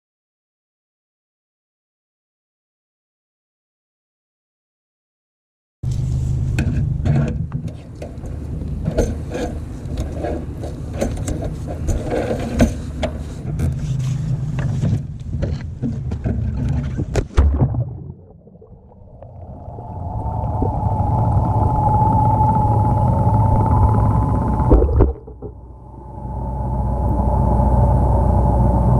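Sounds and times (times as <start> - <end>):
steady whine: 17.5 - 28.9
boat motor running: 20.7 - 28.9.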